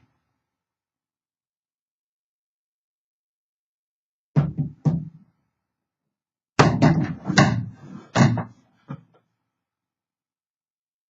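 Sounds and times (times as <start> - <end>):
hard case knocking and thumping: 6.6 - 8.5.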